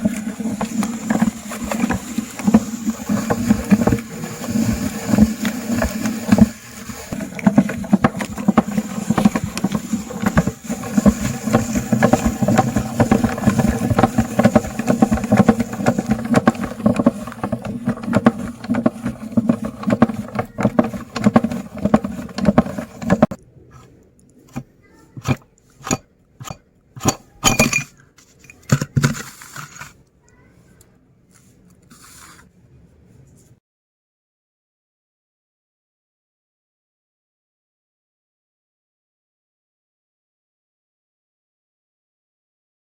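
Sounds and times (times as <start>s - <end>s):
electric meat grinder motor: 0.0s - 23.3s
sharp clicks and knocks: 0.0s - 29.2s.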